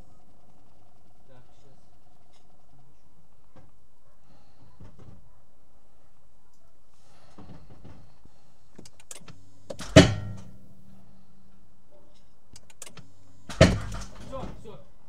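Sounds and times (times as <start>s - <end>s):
light metal clicks: 8.8s - 11.0s, 12.1s - 14.4s
loud metallic bang: 9.8s - 11.0s, 13.5s - 14.3s.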